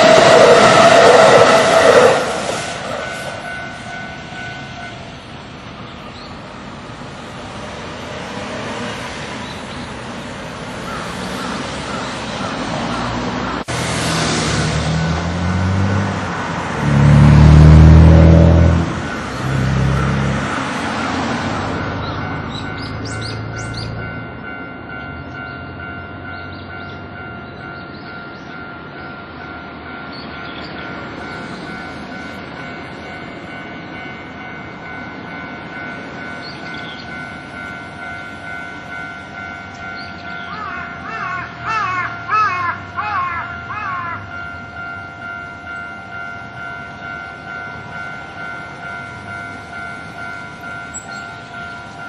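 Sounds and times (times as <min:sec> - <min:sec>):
crossing bell ringing: 0:00.0 - 0:13.8, 0:14.6 - 0:52.0
road traffic passing: 0:00.0 - 0:52.0
heavy vehicle engine: 0:10.0 - 0:24.0.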